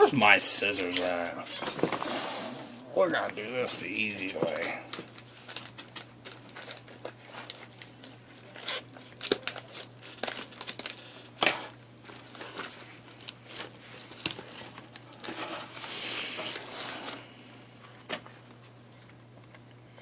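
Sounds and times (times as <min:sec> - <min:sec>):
plastic packaging crinkling: 0:03.6 - 0:17.3.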